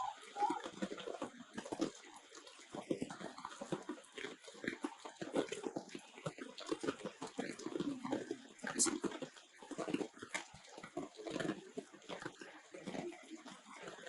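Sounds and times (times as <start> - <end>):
baby monkey crying: 0.0 - 0.6
rain pattering: 0.0 - 14.0.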